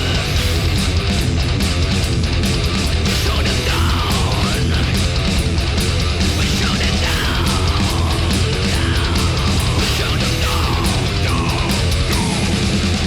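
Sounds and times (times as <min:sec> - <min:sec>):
heavy metal music: 0:00.0 - 0:13.0.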